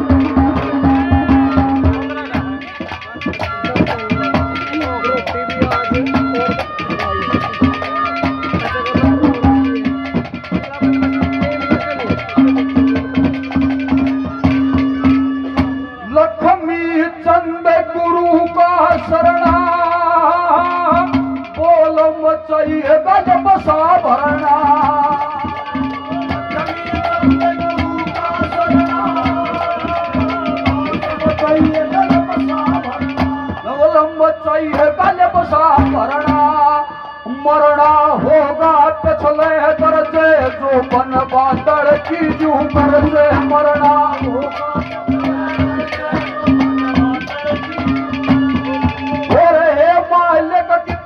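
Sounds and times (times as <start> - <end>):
held melody notes: 0.0 - 50.8
fast hand-drum strokes: 0.0 - 51.0
sustained melodic line: 39.3 - 49.6.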